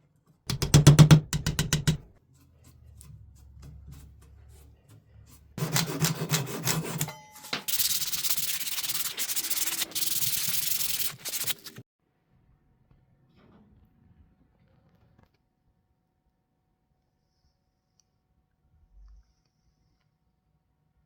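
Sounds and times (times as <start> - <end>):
sandpaper rubbing on wood: 5.3 - 7.0, 7.7 - 11.8.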